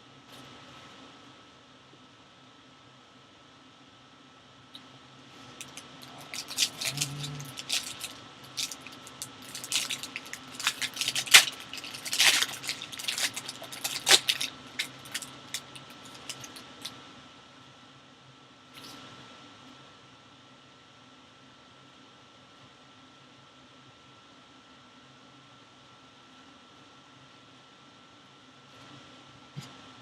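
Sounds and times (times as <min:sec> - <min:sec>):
plastic wrap and cardboard crackling: 0:05.4 - 0:16.9.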